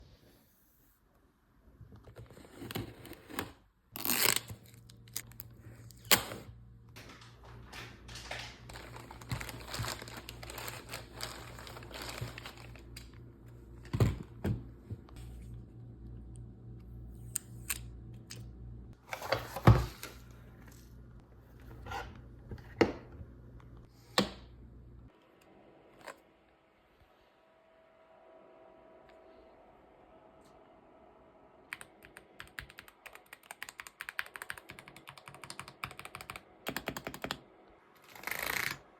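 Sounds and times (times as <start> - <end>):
packaging rustling: 7.0 - 13.2.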